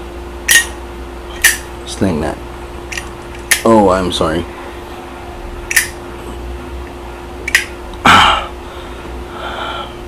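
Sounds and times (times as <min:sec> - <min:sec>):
lighter lid clicking: 0:05.7 - 0:05.9.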